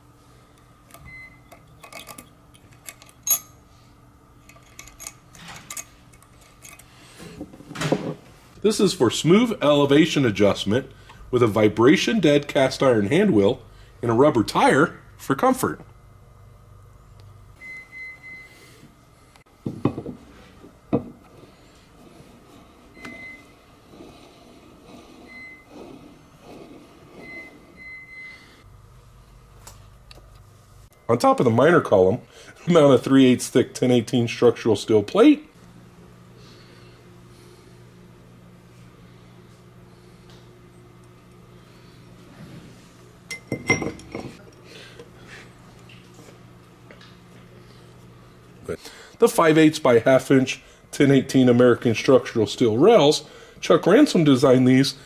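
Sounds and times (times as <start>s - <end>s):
hand wheel rubbing on threads: 21.2s - 27.9s.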